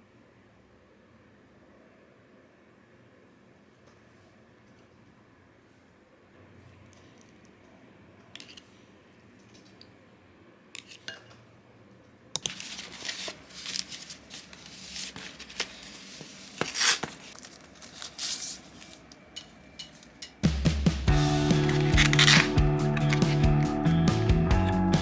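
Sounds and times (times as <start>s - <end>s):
packaging rustling and crinkling: 12.4s - 19.1s, 21.6s - 23.4s.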